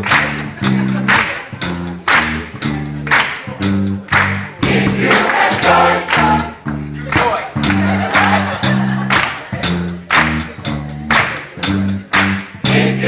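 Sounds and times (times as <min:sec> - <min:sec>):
drums and bass beat: 0:00.0 - 0:13.0
live band: 0:00.0 - 0:13.0
choir singing: 0:04.6 - 0:09.5, 0:12.6 - 0:13.0.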